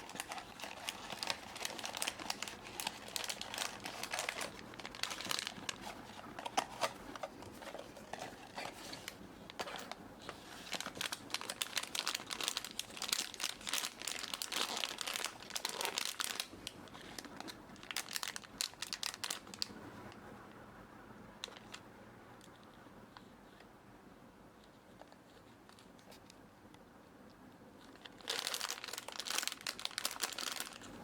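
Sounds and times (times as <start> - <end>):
packaging crinkling and tearing: 0.0 - 19.7, 27.8 - 31.0.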